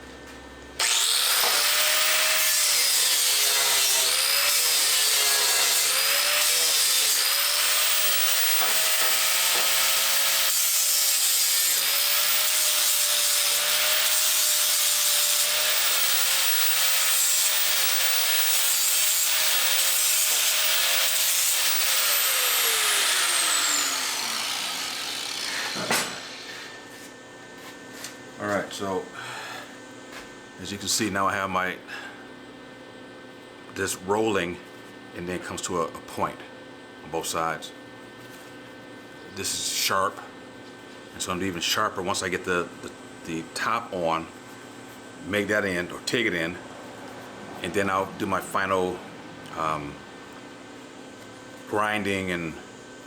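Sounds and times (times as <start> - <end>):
grinder whining against metal: 0.8 - 27.0.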